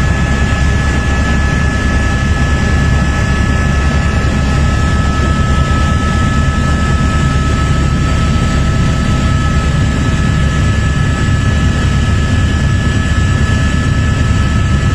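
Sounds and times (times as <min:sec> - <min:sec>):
helicopter engine and rotor noise: 0:00.0 - 0:14.9.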